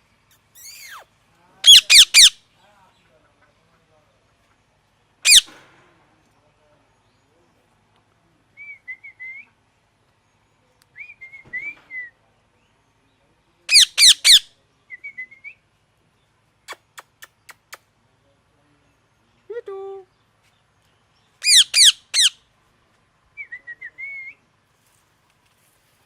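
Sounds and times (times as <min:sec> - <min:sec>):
parrot whistled chirps: 0:00.4 - 0:01.1, 0:21.4 - 0:22.3
parrot screeching: 0:00.6 - 0:01.1, 0:01.7 - 0:02.3, 0:05.3 - 0:05.5, 0:13.7 - 0:14.4, 0:21.4 - 0:22.3.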